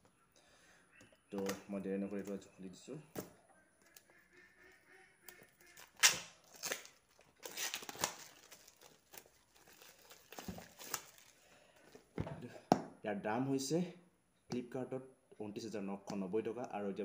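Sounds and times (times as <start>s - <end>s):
packaging tearing and rustling: 5.7s - 11.4s.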